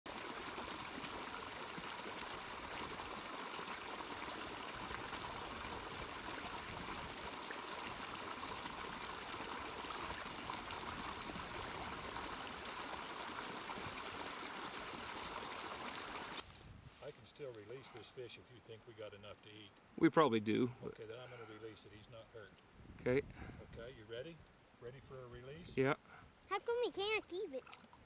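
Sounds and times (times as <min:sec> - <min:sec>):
stream water flowing: 0:00.1 - 0:16.5, 0:26.7 - 0:28.0.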